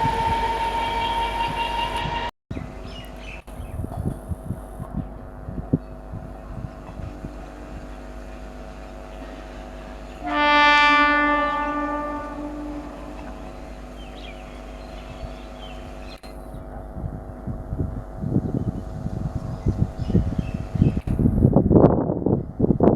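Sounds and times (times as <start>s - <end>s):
train horn blast: 0.0s - 2.3s, 6.9s - 16.0s
steady hum: 2.6s - 21.6s.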